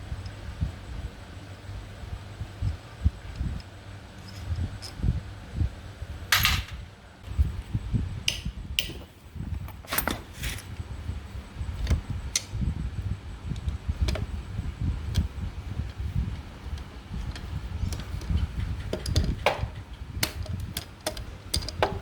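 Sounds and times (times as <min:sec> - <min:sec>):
metallic clicks and taps of tools: 0:17.3 - 0:22.0.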